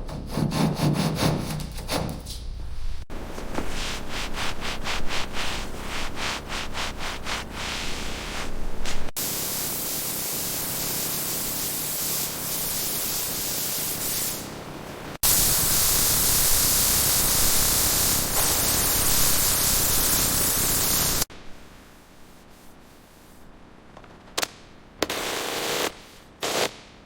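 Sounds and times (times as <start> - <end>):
steady hissing spray: 3.5 - 14.5, 15.2 - 21.3.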